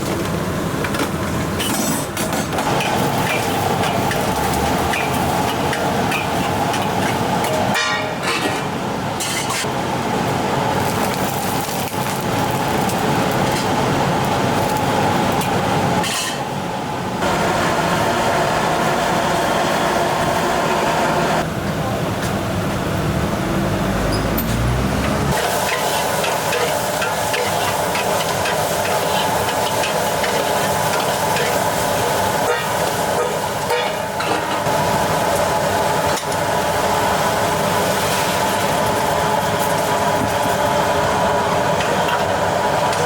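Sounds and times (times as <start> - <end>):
food sizzling in a pan: 25.3 - 35.3.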